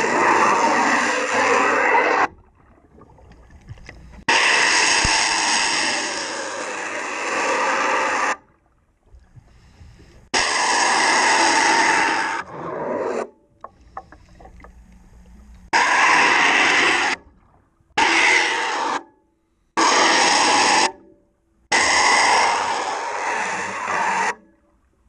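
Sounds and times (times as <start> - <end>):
faint clicks and scrapes: 2.3 - 4.3, 9.0 - 10.3, 12.5 - 15.7.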